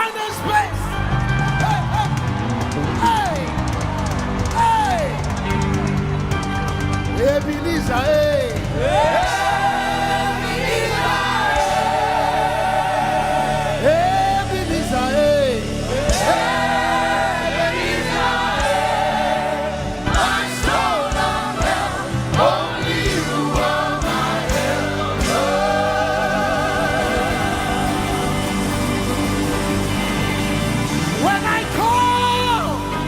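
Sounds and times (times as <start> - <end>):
band playing: 0.0 - 33.0
bass notes: 0.4 - 33.0
choir singing gospel music: 7.9 - 33.0.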